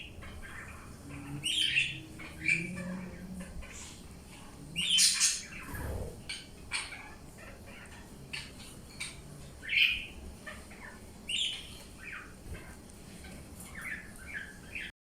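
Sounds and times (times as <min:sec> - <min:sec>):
cockatiel chirping and squawking: 0:04.8 - 0:14.9.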